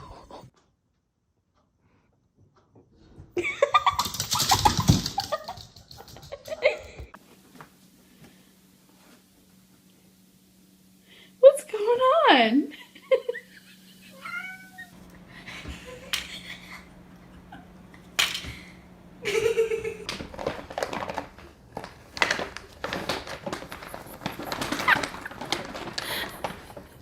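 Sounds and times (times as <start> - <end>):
cat meowing: 14.1 - 15.0
rustling: 20.2 - 27.0.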